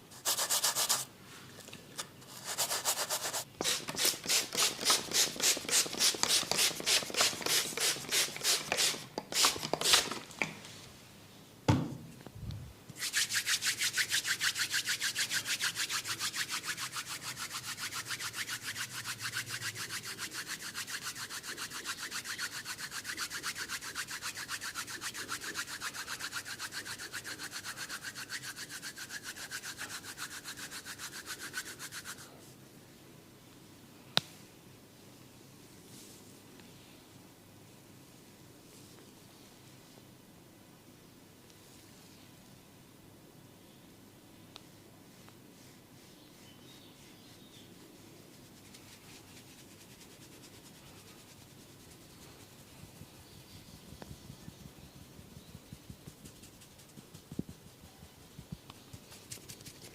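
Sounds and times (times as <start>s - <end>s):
hands rubbing hair and skin: 48.1s - 59.9s.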